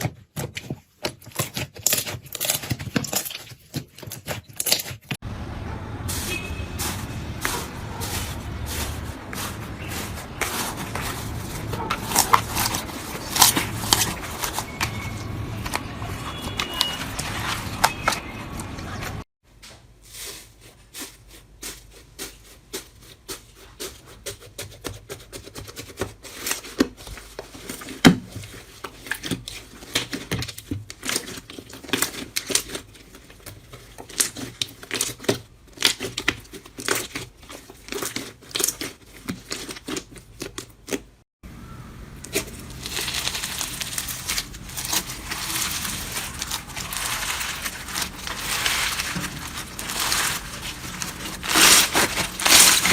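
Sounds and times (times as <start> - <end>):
slime crackling and popping: 42.3 - 52.9.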